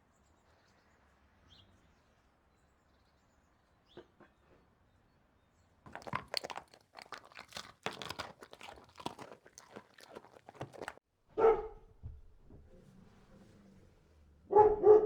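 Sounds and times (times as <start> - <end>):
crunching clicks: 5.9 - 11.0
dog barking: 8.1 - 11.9, 14.5 - 15.0.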